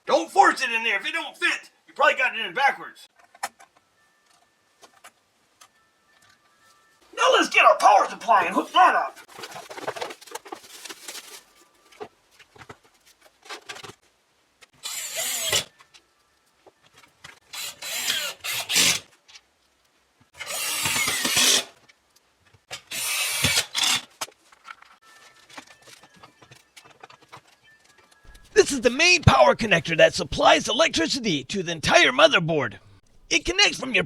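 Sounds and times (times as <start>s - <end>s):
rustling and rubbing of cables: 9.2s - 14.1s.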